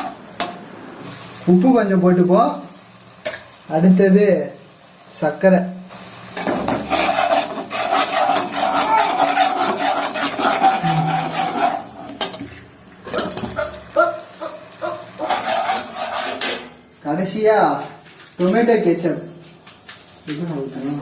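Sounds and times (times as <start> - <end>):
spoon scraping a pan: 6.4 - 12.7, 14.8 - 16.8.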